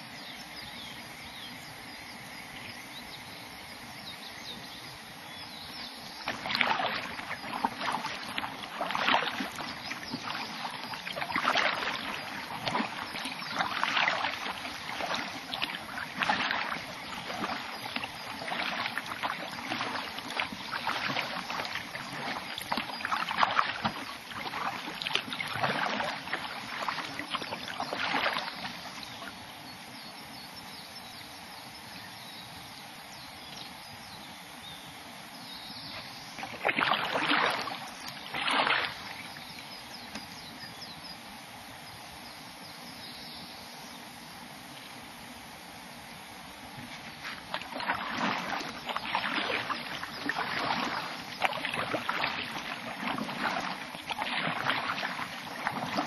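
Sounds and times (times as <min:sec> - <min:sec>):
faint steady hiss: 0:00.0 - 0:56.0
kayak paddle strokes splashing: 0:05.5 - 0:30.0, 0:35.8 - 0:41.8, 0:44.5 - 0:56.0.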